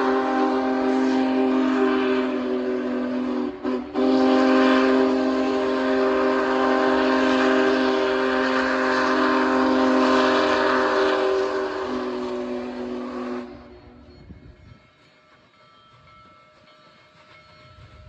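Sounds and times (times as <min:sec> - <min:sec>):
steam locomotive whistle: 0:00.0 - 0:14.4.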